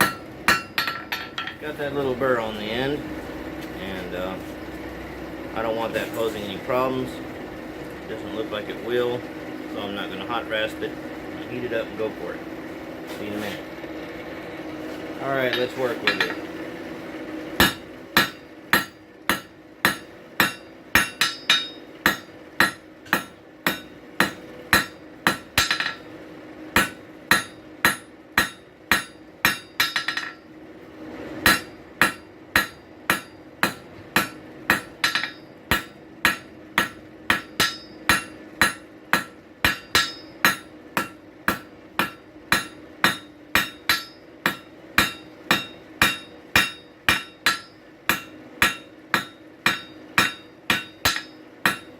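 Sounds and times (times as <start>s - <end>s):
hammer striking steel on anvil: 0.0s - 1.7s, 15.4s - 16.5s, 17.6s - 26.1s, 26.8s - 30.5s, 31.4s - 51.9s.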